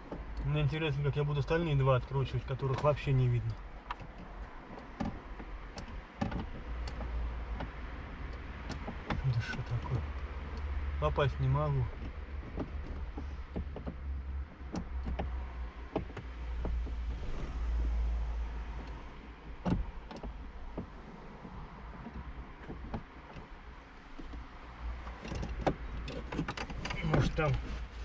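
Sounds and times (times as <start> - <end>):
low handling rumble: 6.5 - 25.2.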